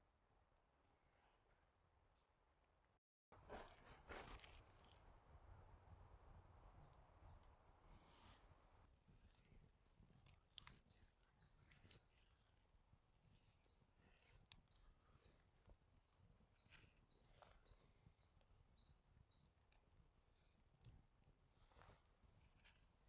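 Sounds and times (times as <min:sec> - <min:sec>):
small bird chirping: 0:06.0 - 0:06.4, 0:10.0 - 0:12.5, 0:13.2 - 0:19.8, 0:21.6 - 0:23.0.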